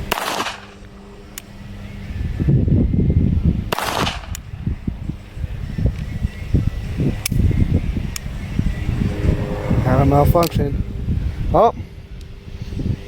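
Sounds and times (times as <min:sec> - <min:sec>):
pistol shot: 0:00.1 - 0:00.6, 0:03.7 - 0:04.3
low rumbling noise: 0:04.6 - 0:13.0.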